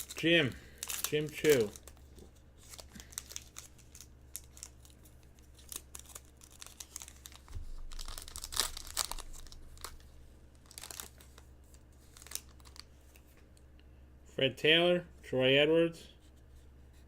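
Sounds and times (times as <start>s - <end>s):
wrapper tearing and crinkling: 0.0s - 13.2s.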